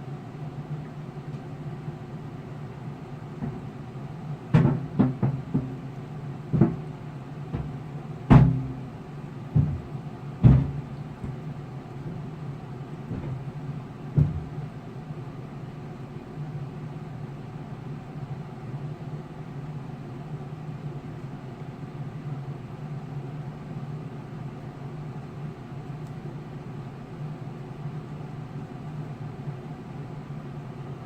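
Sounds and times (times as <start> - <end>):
steady low hum: 0.0 - 31.0
thuds on refrigerator door: 4.5 - 5.8, 6.5 - 6.9, 7.5 - 8.9, 9.5 - 11.4, 14.1 - 14.6.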